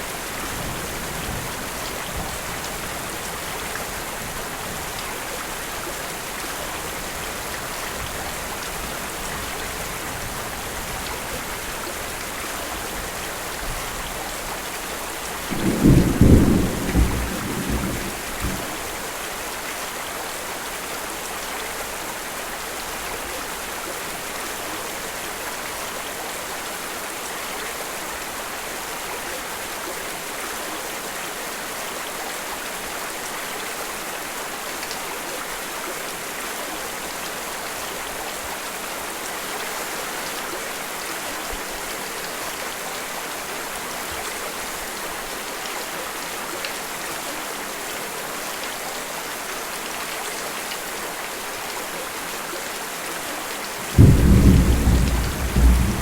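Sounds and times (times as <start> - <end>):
steady rain: 0.0 - 56.0
low rumble of thunder: 15.5 - 18.8, 53.8 - 56.0.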